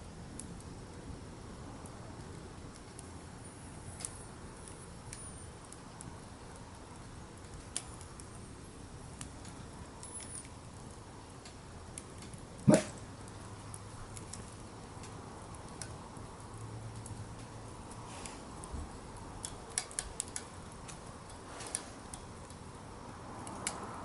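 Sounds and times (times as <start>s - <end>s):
campfire crackling: 0.0s - 24.0s
dog barking sharply: 12.7s - 13.0s.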